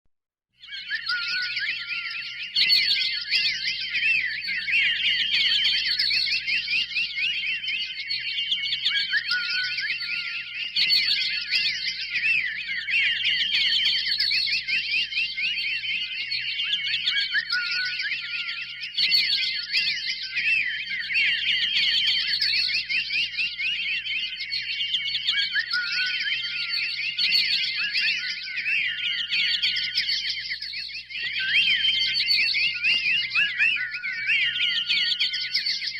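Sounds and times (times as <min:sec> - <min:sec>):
birds chirping and twittering: 0:00.6 - 0:35.9.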